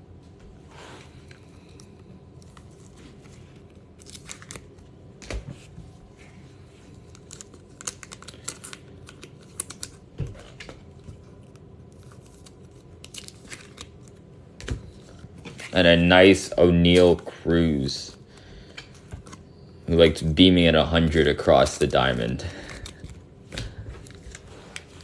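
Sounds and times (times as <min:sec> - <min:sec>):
plastic wrappers crinkling: 0:01.6 - 0:04.9, 0:06.8 - 0:14.3, 0:21.5 - 0:25.0.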